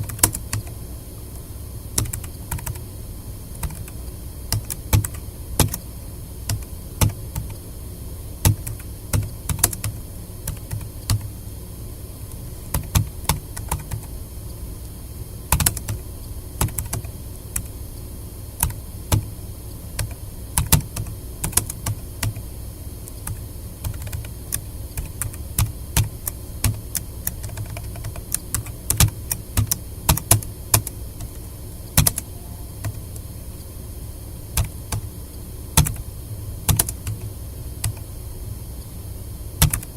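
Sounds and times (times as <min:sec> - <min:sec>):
keyboard key clicks: 0:39.6 - 0:39.9.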